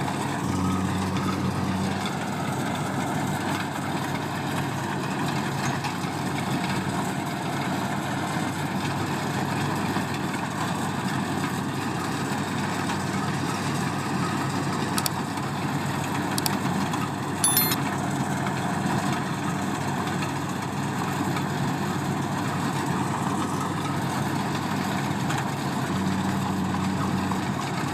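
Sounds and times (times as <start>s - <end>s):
farm machine engine running: 0.0s - 9.4s, 21.2s - 27.9s.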